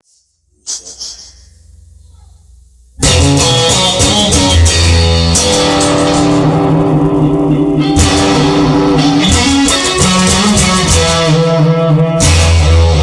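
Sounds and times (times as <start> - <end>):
faint low hum: 0.0 - 3.0
rock music with guitar and drums: 3.0 - 13.0.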